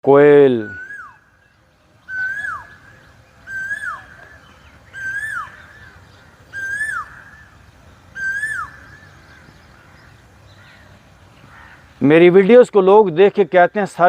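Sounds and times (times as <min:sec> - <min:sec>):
bird whistled calls: 0:00.5 - 0:09.8.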